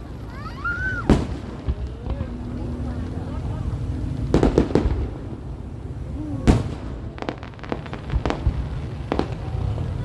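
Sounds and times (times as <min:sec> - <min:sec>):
distant firework rumble: 0:00.0 - 0:10.0
firework bang: 0:00.3 - 0:10.0
small quick firework pops: 0:01.0 - 0:03.2, 0:06.4 - 0:09.8.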